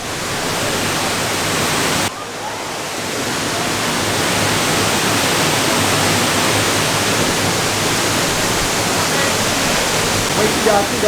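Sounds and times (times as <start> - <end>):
waterfall rushing: 0.0 - 11.0.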